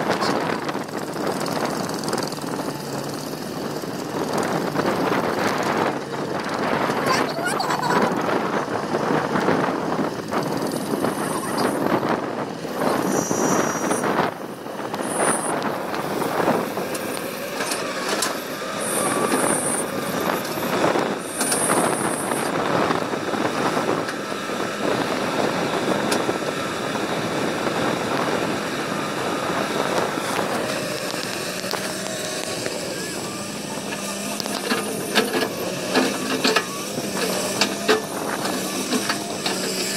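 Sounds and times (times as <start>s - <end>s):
excavator diesel engine running: 0.0s - 39.9s
thin steady whine: 24.9s - 39.9s.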